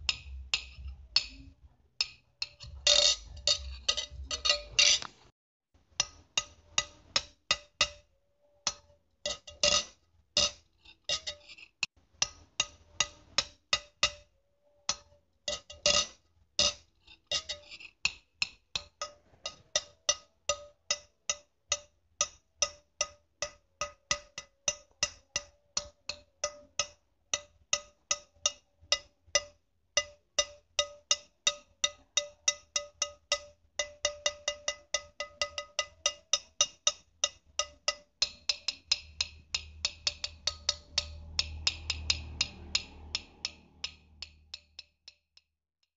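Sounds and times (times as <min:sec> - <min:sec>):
ceramic plates clinking: 0:02.0 - 0:05.2.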